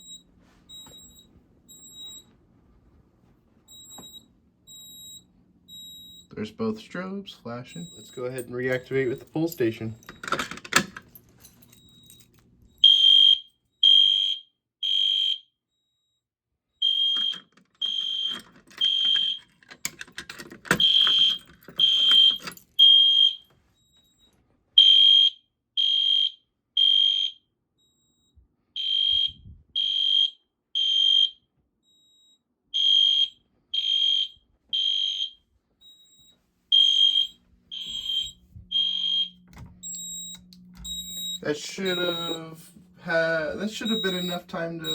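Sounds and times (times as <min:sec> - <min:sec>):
fire alarm beeping: 0:00.0 - 0:02.3, 0:03.7 - 0:16.2, 0:16.8 - 0:44.9.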